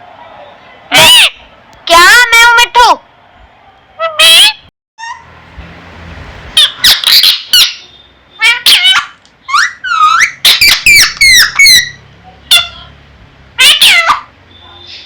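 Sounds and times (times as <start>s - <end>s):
parrot squawking: 0.9s - 2.6s, 4.0s - 5.3s, 6.6s - 12.9s, 13.6s - 14.3s.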